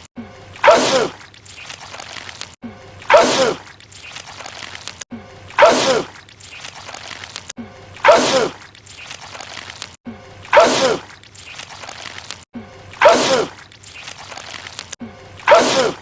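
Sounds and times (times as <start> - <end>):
man sneezing loudly: 10.5 - 11.1, 15.5 - 16.0.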